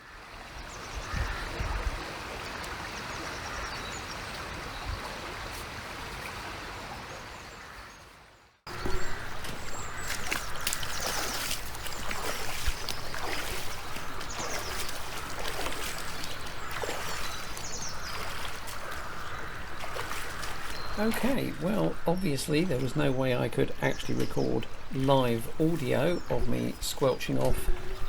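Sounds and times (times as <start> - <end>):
flowing river water: 0.0 - 28.0
small birds chirping: 8.7 - 28.0.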